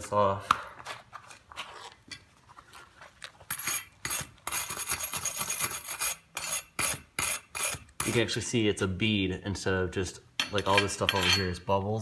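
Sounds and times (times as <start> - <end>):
scraping on steel: 3.5 - 8.2.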